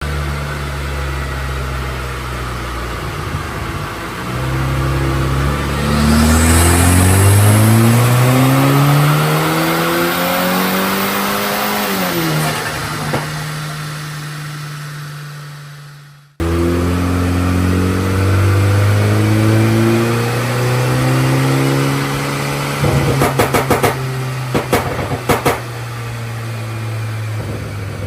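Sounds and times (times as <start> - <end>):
car engine revving: 0.0 - 28.0
exhaust pop: 22.8 - 26.0.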